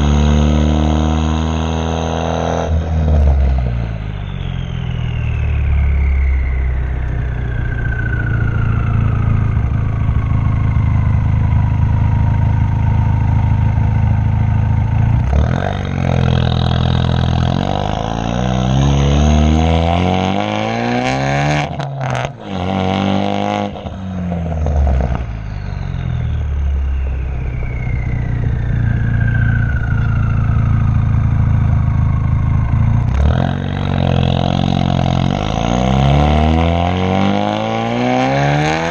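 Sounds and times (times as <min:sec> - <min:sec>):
loud car exhaust: 0:00.0 - 0:38.9
high falling whistle: 0:03.0 - 0:21.8, 0:24.5 - 0:38.9
exhaust cracks: 0:23.7 - 0:35.8.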